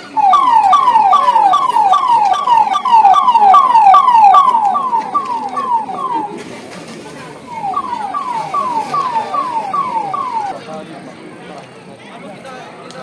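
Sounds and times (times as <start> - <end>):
electronic siren wailing: 0.0 - 6.4, 7.4 - 10.5.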